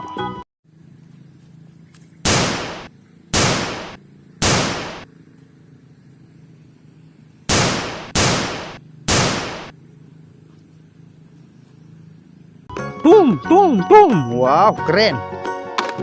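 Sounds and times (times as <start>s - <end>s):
pistol gunshots: 2.3s - 5.1s, 7.5s - 9.7s.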